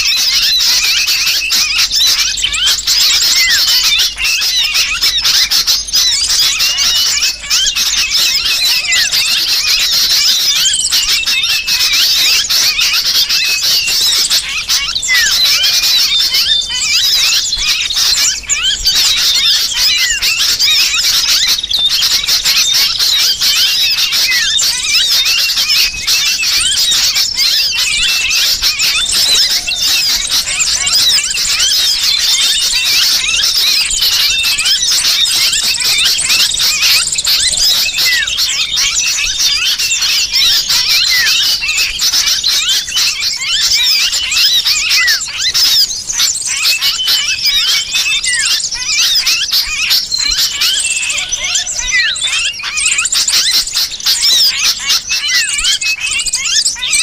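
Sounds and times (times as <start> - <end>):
bird distress calls: 0.0 - 57.0
small birds chattering in alarm: 0.0 - 57.0.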